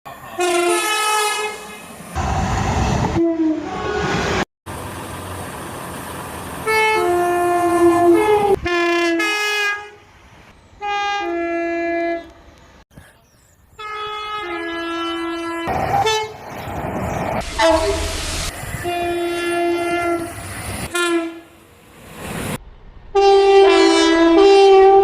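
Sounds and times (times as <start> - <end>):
train running noise: 0.1 - 9.0, 14.0 - 25.0
locomotive air horn blasts: 0.4 - 1.8, 3.2 - 4.2, 6.6 - 10.0, 10.8 - 12.4, 13.8 - 16.4, 17.4 - 21.6, 23.1 - 25.0.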